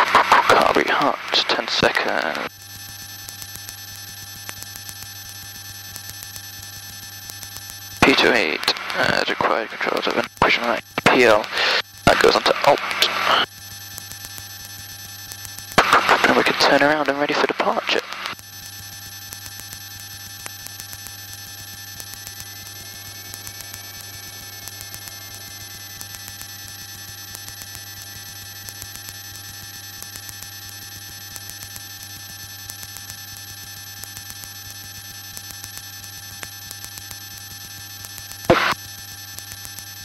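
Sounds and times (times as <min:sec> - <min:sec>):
steady electrical hum: 0:00.0 - 0:39.9
faint whine rising and falling: 0:19.7 - 0:29.6.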